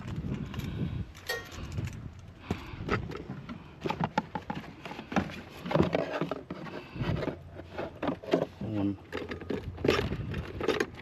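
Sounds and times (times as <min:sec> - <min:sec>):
junk knocking and clinking: 0:00.0 - 0:02.1.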